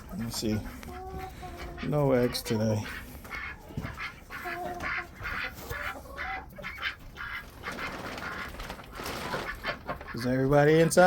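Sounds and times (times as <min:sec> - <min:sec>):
chickens clucking: 0:00.0 - 0:11.0.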